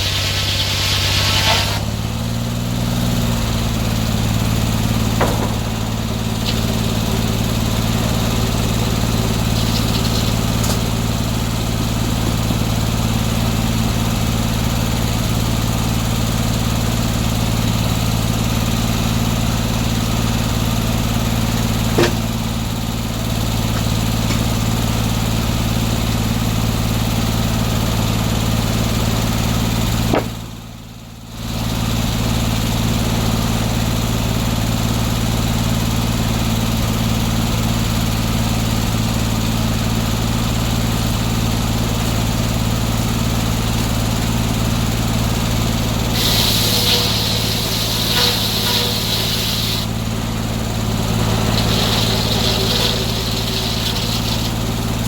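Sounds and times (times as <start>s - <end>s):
saw blade hissing: 0.0s - 1.9s, 8.8s - 11.0s, 46.0s - 55.0s
gas engine running: 0.0s - 55.0s
sharp knocks: 5.2s - 5.7s.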